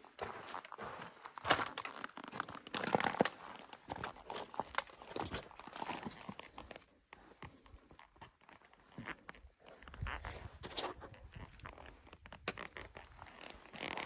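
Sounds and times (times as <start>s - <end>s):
footsteps crunching on gritty ground: 0.0s - 6.8s.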